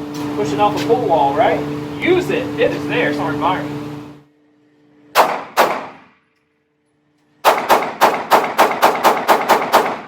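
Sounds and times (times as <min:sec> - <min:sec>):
handgun shots: 0:05.2 - 0:06.1, 0:07.4 - 0:10.0.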